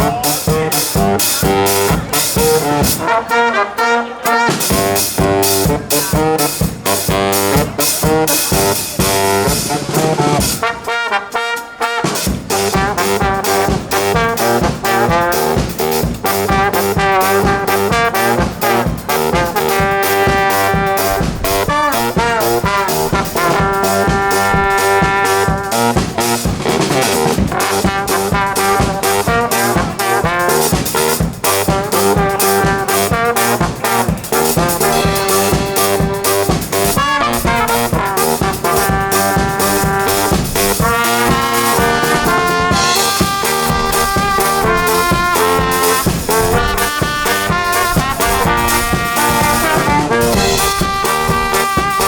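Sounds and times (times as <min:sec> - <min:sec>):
drum kit beat: 0:00.0 - 0:03.4, 0:04.1 - 0:52.0
trumpets and trombones: 0:00.0 - 0:52.0.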